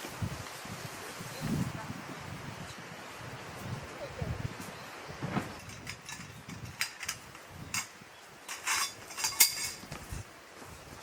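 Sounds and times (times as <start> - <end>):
hard objects clinking together: 5.5 - 9.9.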